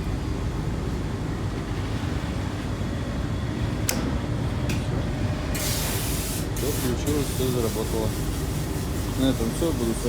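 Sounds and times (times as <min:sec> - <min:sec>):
hiss: 0:05.6 - 0:10.0.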